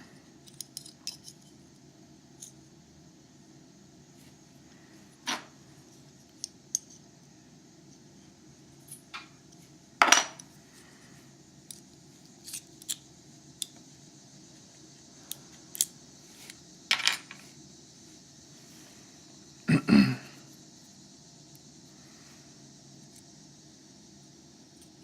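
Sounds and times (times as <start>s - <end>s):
small metal parts clinking: 0.4s - 1.5s.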